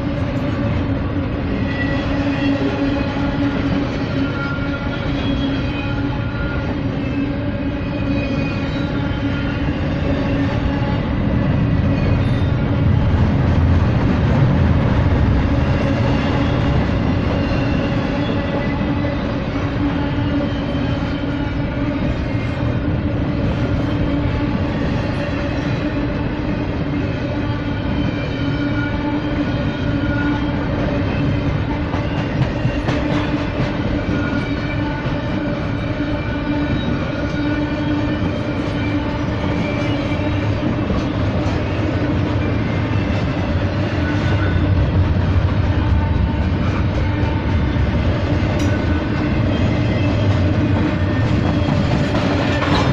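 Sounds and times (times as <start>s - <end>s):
freight train wheels rumbling: 0.0s - 52.9s
train wheels clicking over rails: 31.4s - 35.8s, 38.0s - 52.9s.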